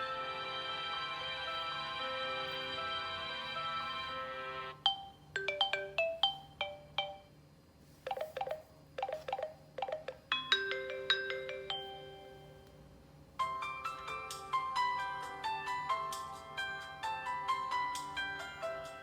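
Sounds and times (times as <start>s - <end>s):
phone ringtone melody: 8.1s - 12.6s, 13.4s - 16.1s.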